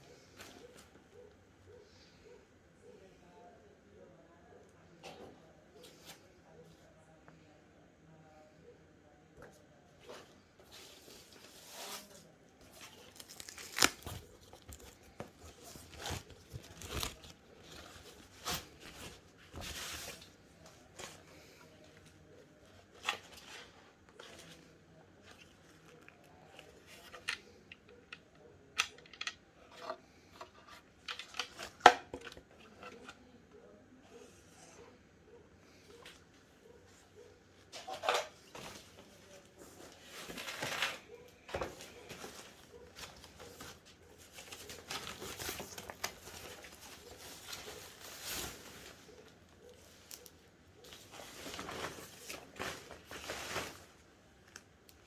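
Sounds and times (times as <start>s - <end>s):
plastic and cardboard rustling: 10.0s - 33.3s, 35.9s - 55.0s.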